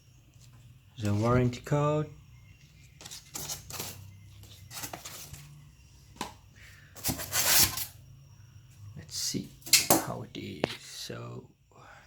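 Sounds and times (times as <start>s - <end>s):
paper and cardboard rustling: 2.9s - 5.5s, 7.0s - 7.9s.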